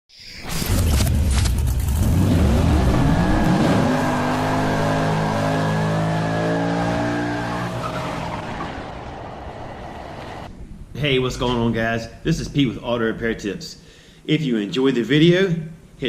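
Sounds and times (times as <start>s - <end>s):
car engine revving: 0.8s - 10.5s.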